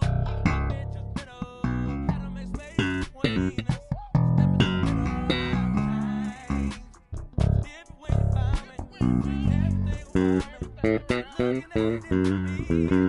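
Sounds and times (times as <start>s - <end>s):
electric bass plucked notes: 0.0s - 13.0s.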